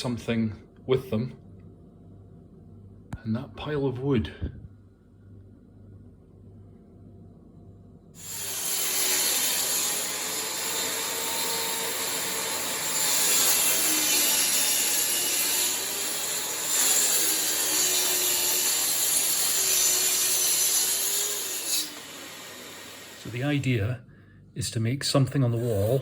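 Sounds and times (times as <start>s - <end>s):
electric saw cutting wood: 8.2s - 23.3s.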